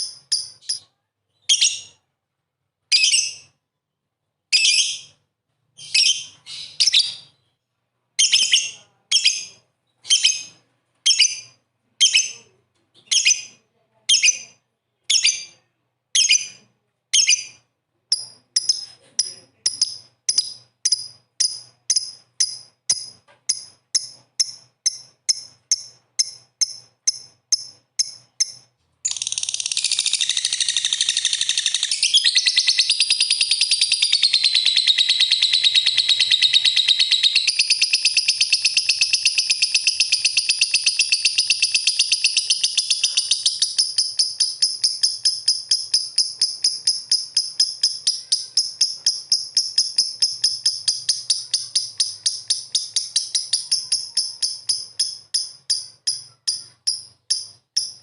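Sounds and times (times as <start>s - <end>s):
lovebirds chirping: 5.8s - 15.6s, 16.2s - 58.0s
rapid bird chattering: 18.1s - 58.0s.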